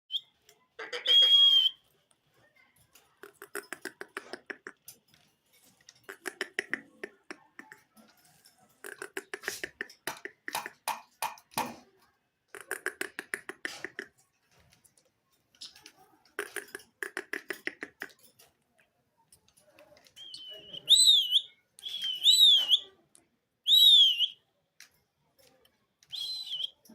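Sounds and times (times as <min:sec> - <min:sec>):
mouth clicking: 0:03.2 - 0:05.0, 0:05.9 - 0:07.9, 0:08.8 - 0:10.9, 0:12.5 - 0:14.2, 0:16.4 - 0:18.2, 0:26.0 - 0:26.8.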